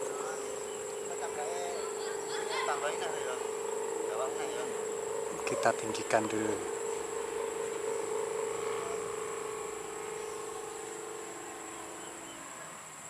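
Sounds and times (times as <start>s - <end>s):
kite hummer buzzing in wind: 0.0s - 13.0s.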